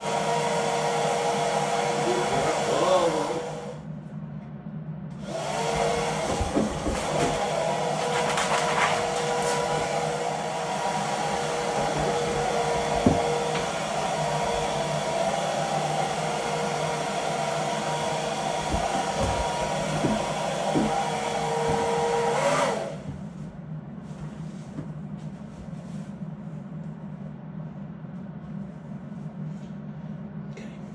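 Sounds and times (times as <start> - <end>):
blow dryer whirring: 0.0 - 3.9, 5.1 - 23.4.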